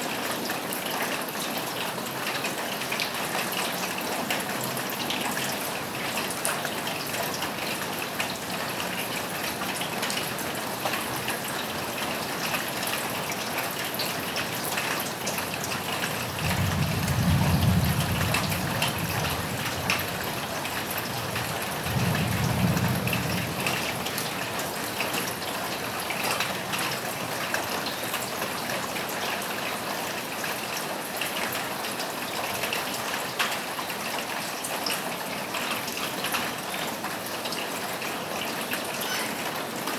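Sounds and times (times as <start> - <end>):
rain falling on a roof: 0.0 - 39.9
low rumbles of thunder: 15.9 - 25.2.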